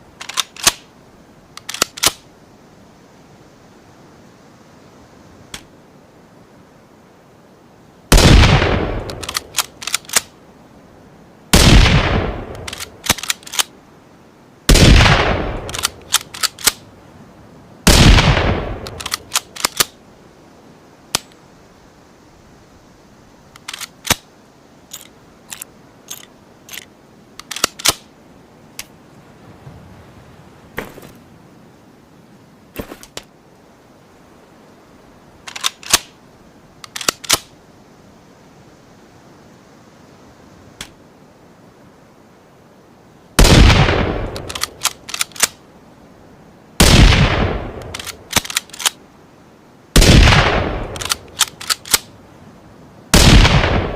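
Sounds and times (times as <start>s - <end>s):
rifle bolt clicks: 0.2s - 0.8s, 1.6s - 2.2s, 9.0s - 10.3s, 12.5s - 13.7s, 15.6s - 16.8s, 18.8s - 20.0s, 23.6s - 24.2s, 24.9s - 28.1s, 35.5s - 36.1s, 36.8s - 37.5s, 44.2s - 45.6s, 47.8s - 49.0s, 50.8s - 52.1s
light mechanical clicks: 1.5s - 2.2s, 9.0s - 10.3s, 12.5s - 13.7s, 15.6s - 16.8s, 18.8s - 20.0s, 23.5s - 24.3s, 24.9s - 28.1s, 36.8s - 37.5s, 44.3s - 45.6s, 47.8s - 49.0s, 50.8s - 52.1s
rifle shots: 8.1s - 10.2s, 11.6s - 13.7s, 14.7s - 16.8s, 17.9s - 20.0s, 43.4s - 45.5s, 46.8s - 48.9s, 50.0s - 52.1s, 53.2s - 53.9s.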